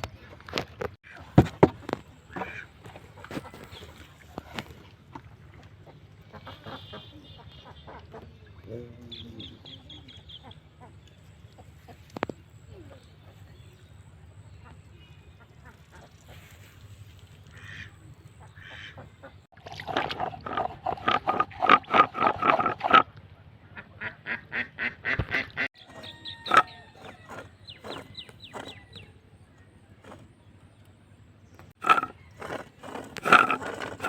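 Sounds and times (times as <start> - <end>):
ducks quacking: 2.3 - 4.0, 5.8 - 8.5, 17.5 - 19.4, 23.7 - 28.8.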